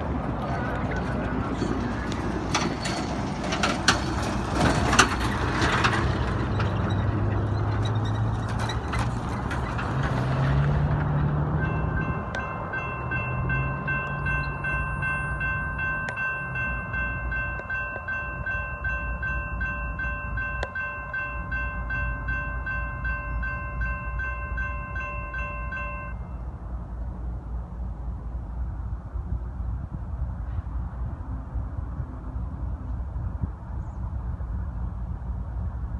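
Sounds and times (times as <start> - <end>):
freight train rumbling past: 0.0 - 35.9
railroad warning bell ringing: 11.5 - 26.7.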